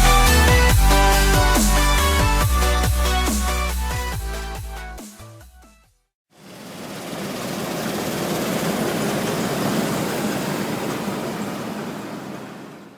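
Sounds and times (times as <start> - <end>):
combine harvester drone: 6.4 - 12.9.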